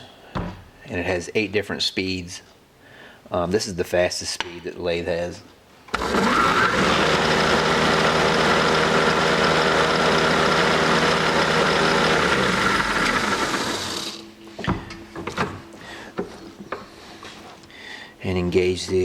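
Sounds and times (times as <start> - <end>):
lathe motor whirring whine: 5.9 - 14.4.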